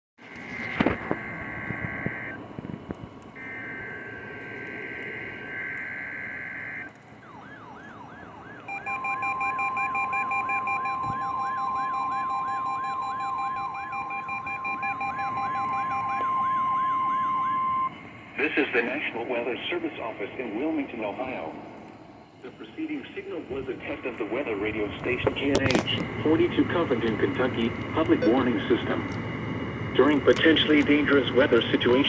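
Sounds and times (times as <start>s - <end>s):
steady warning alarm tone: 0.9s - 2.5s, 3.4s - 18.2s, 23.1s - 32.0s
yelping siren: 1.0s - 2.4s, 3.4s - 18.0s, 28.2s - 29.0s.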